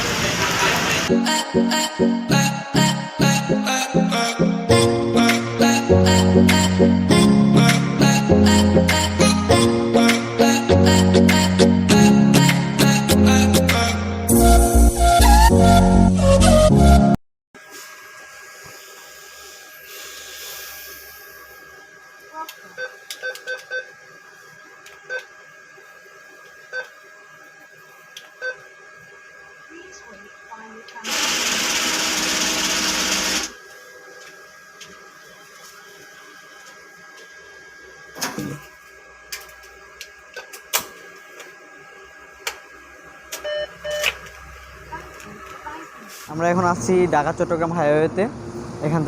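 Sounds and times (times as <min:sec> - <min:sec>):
thin electrical hum: 0:17.6 - 0:49.0
keypad beeps: 0:43.4 - 0:44.1.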